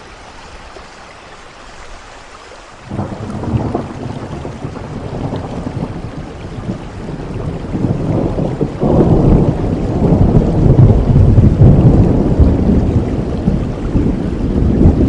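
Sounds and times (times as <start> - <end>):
steady rain: 0.0 - 15.0
low rumble of thunder: 2.9 - 15.0.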